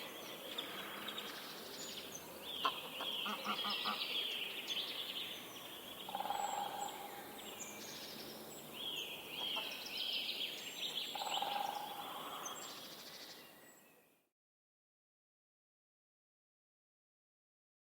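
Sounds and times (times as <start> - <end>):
birds calling and singing: 0.0 - 14.1.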